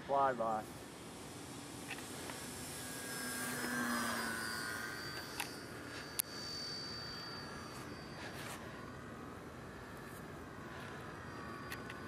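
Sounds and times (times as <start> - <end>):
model airplane motor whining: 0.4 - 12.0.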